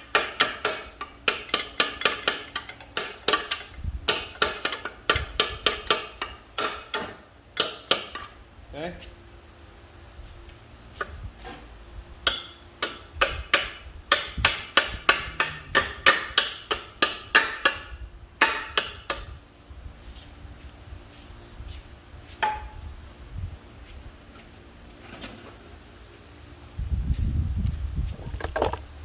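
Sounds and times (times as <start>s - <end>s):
hammer tapping metal punch: 0.0s - 8.3s, 12.2s - 19.3s.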